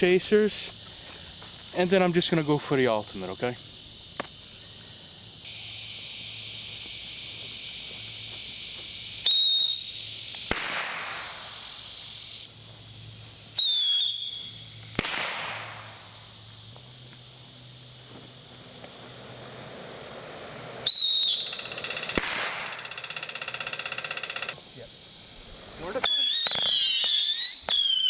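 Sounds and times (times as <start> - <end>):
high hiss: 0.0 - 28.0
firework whistle: 9.0 - 12.5, 13.5 - 16.1, 20.6 - 24.6, 25.8 - 28.0
firework bang: 10.5 - 11.7, 14.9 - 16.0, 22.1 - 22.9.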